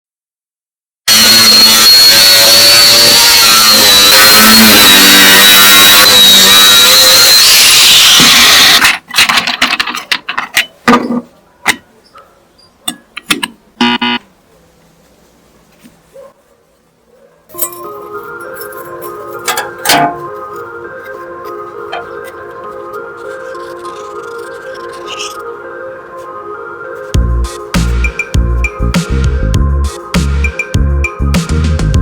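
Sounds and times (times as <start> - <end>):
angle grinder whining: 1.1 - 8.9
sharp clicks and knocks: 12.8 - 13.6.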